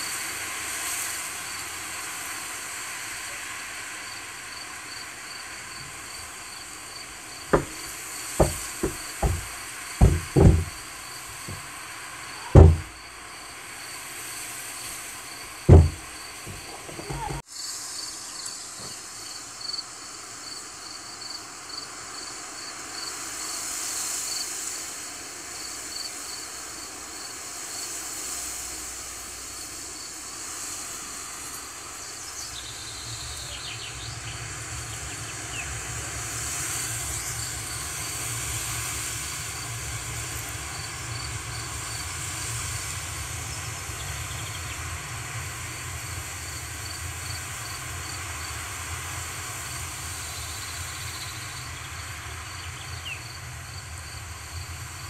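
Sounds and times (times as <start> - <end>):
insects chirping: 4.0 - 11.7, 25.5 - 44.6.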